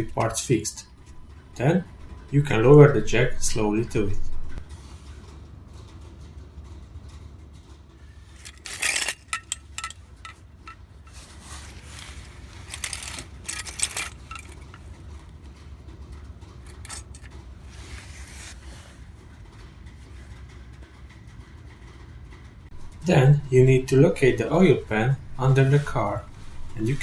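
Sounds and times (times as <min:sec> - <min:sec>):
low hum: 0:00.0 - 0:27.0
metal tools clinking and clattering: 0:08.3 - 0:15.0, 0:16.2 - 0:17.5, 0:23.6 - 0:27.0.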